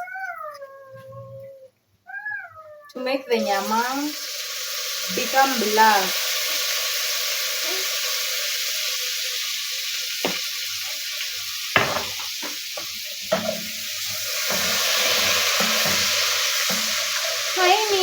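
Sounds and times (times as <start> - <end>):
meat sizzling in a pot: 3.0 - 18.0
sharp knocks: 11.8 - 12.6.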